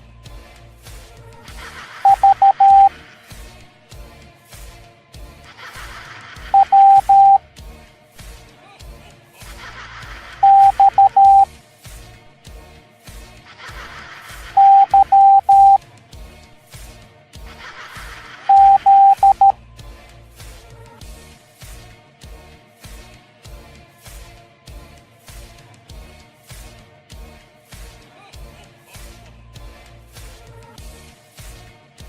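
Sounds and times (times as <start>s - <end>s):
background music with steady beat: 0.0s - 32.0s
morse code beeps: 2.1s - 2.9s, 6.6s - 7.4s, 10.4s - 11.5s, 14.6s - 15.8s, 18.5s - 19.6s.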